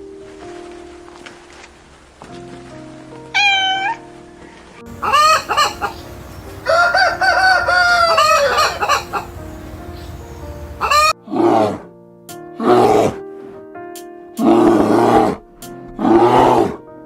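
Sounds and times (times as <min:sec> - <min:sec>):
background music: 0:00.0 - 0:17.0
rooster crowing: 0:04.9 - 0:11.1
rough low animal calls: 0:04.9 - 0:11.6.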